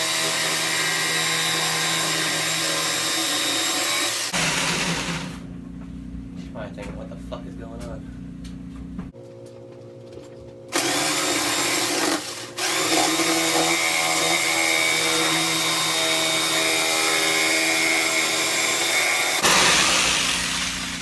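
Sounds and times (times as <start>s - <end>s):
electric saw cutting wood: 0.0s - 5.4s, 10.7s - 21.0s.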